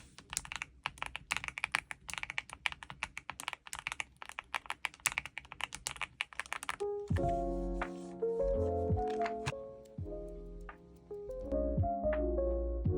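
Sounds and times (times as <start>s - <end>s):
fast typing on mechanical keyboard: 0.0s - 6.9s.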